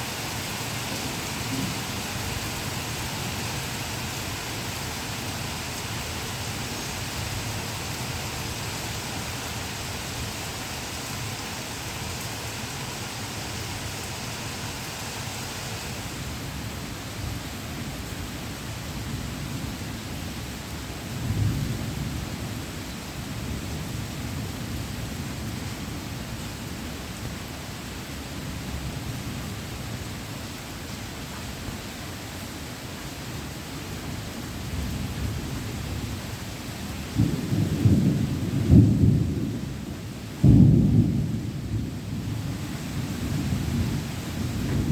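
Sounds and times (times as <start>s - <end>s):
heavy rain falling: 0.0s - 44.9s
rolling thunder: 36.9s - 44.9s.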